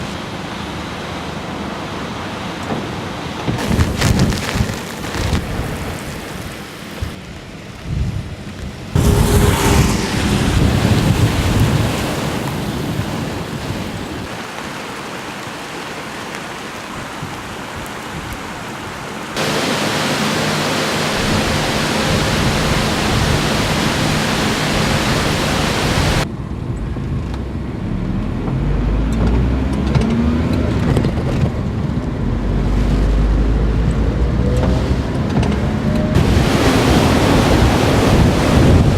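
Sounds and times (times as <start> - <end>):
heavy rain and wind hiss: 0.0 - 38.9
low rumble: 8.8 - 12.0, 20.9 - 36.6.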